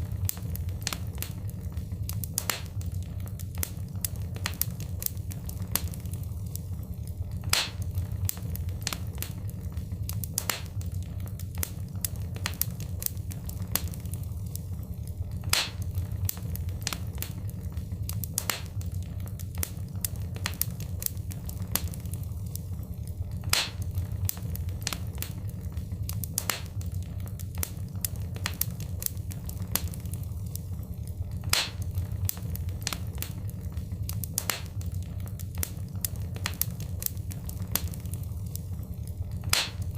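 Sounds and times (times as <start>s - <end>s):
wood fire crackling: 0.0s - 39.9s.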